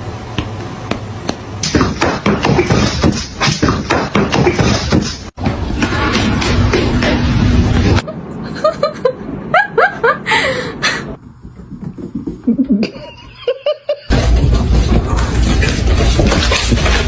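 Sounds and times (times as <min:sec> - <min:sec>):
person laughing: 0:08.0 - 0:11.1, 0:12.4 - 0:14.1.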